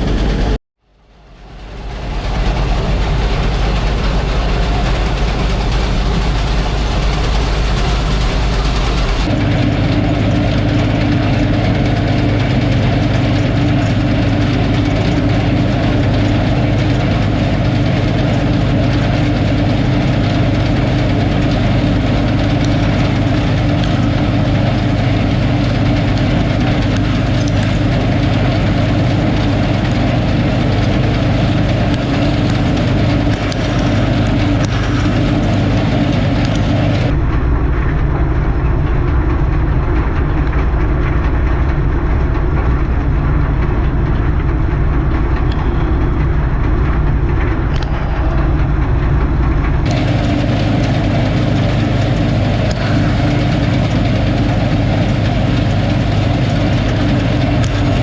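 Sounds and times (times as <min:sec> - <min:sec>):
combine harvester engine hum: 0:00.0 - 0:58.0.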